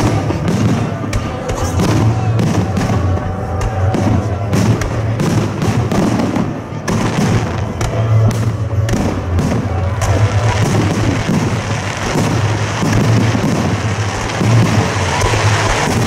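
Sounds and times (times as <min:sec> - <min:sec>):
background music: 0:00.0 - 0:16.0
fireworks bangs and crackles: 0:00.0 - 0:16.0.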